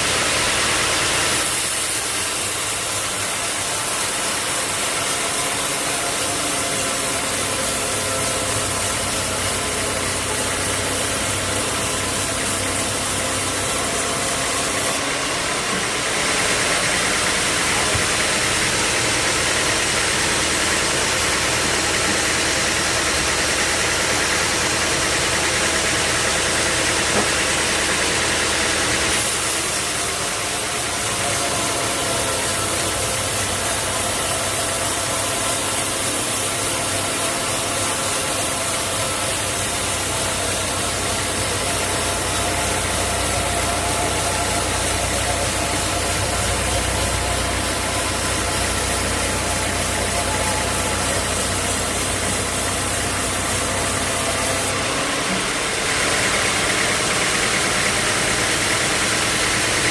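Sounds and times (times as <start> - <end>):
sawmill machinery humming and hissing: 0.0 - 59.9.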